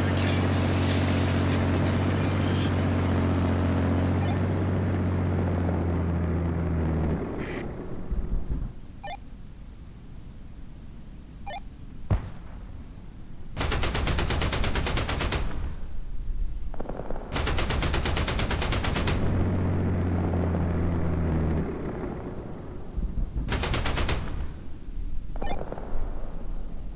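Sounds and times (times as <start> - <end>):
automatic gunfire: 13.6 - 22.2, 23.5 - 26.2.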